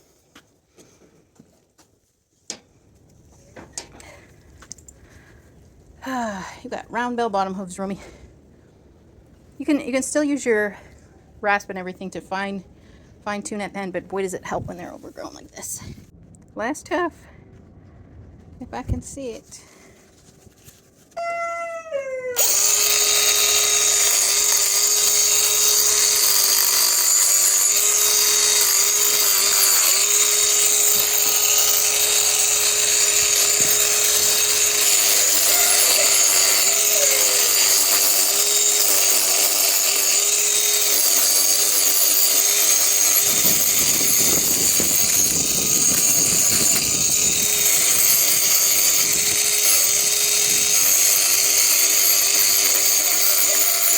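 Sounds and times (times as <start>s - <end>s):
angle grinder high whine: 22.4s - 53.9s
rough deep grinding noise: 22.4s - 53.9s.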